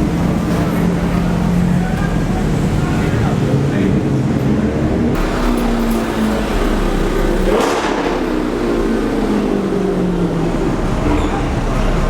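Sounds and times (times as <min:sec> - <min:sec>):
car engine at low revs: 0:04.0 - 0:12.0.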